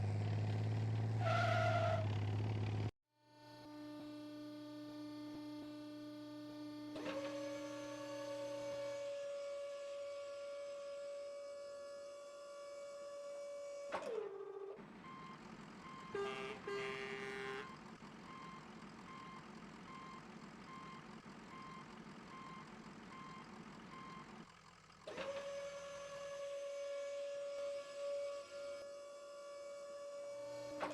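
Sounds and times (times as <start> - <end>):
reversing alarm beeps: 15.1 - 16.4, 17.5 - 24.4.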